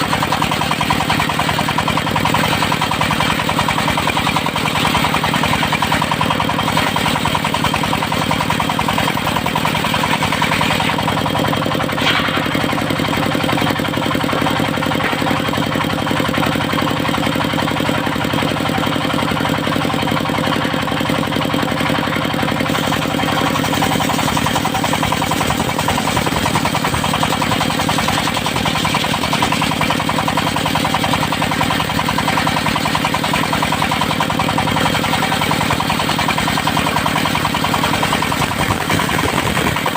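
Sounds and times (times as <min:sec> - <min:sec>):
sawmill engine knocking: 0:00.0 - 0:39.9
brief sharp sound: 0:12.0 - 0:12.9.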